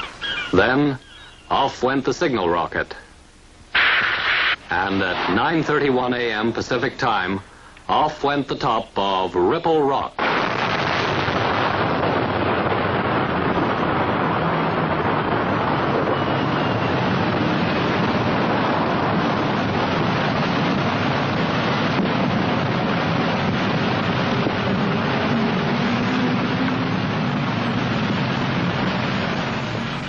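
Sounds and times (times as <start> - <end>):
explosion rushing roar: 3.8 - 7.3, 10.2 - 30.0.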